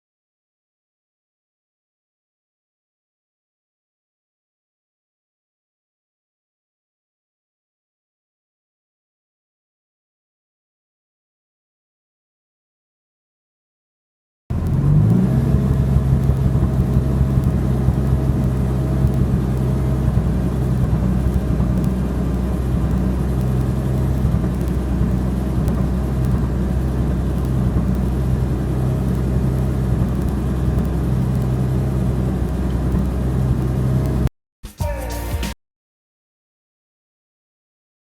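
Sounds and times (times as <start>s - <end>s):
car engine running at low speed: 14.5s - 34.3s.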